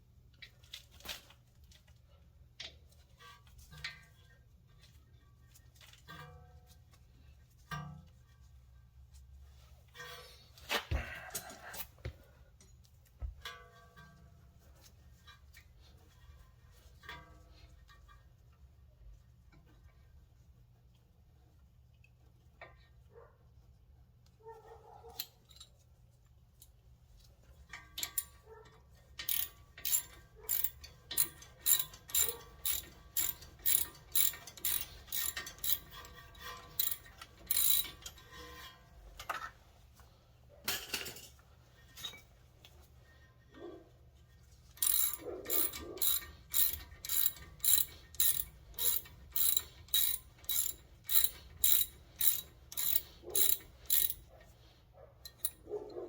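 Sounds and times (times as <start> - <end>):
ratchet wrench clicking: 29.2 - 38.2, 44.8 - 54.3, 55.2 - 55.6.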